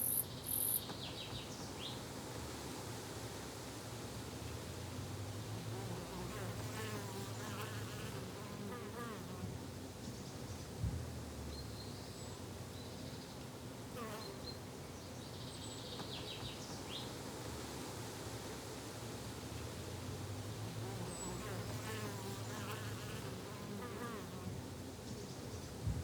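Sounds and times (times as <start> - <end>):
flying insects buzzing: 5.7 - 9.6, 20.8 - 24.7
low thump: 10.8 - 11.2.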